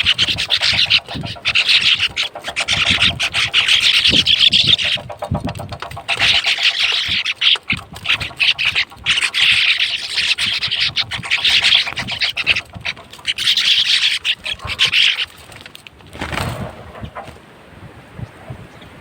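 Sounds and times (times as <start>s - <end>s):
sparrows chirping: 8.0s - 15.7s, 16.8s - 19.0s.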